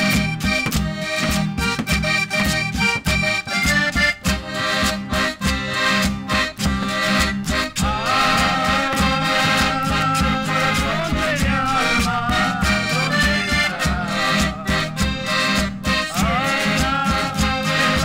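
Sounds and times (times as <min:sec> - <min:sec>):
traditional music with steady beat: 0:00.0 - 0:18.0
wavering melody line: 0:07.4 - 0:18.0.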